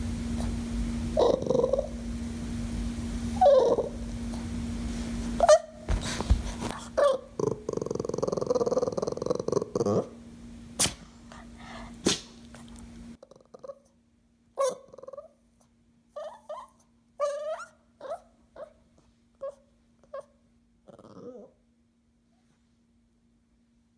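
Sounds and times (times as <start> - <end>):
dog whining and yipping: 1.2 - 2.0, 3.4 - 4.0, 6.8 - 7.4, 14.6 - 15.3, 16.1 - 18.8, 19.4 - 21.5.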